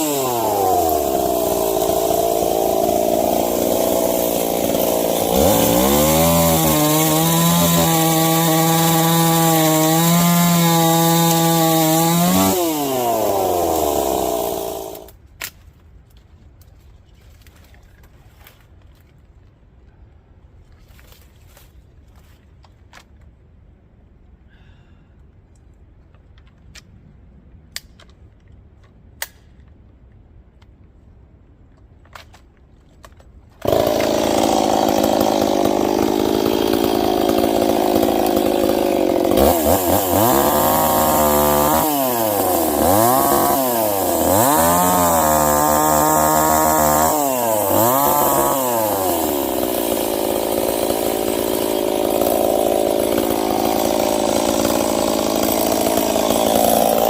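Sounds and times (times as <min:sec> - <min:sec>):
chainsaw revving: 0:00.0 - 0:15.1, 0:33.6 - 0:57.0.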